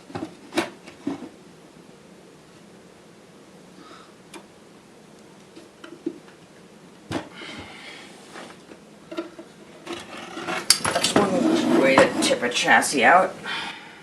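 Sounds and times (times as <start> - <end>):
chassis scraping and rattling: 8.3 - 12.6.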